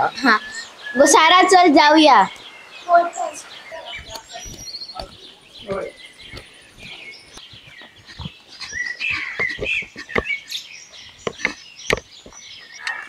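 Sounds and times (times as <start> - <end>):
birds chirping: 0.0 - 13.0
sharp clicks or knocks: 8.1 - 10.3, 11.2 - 12.4.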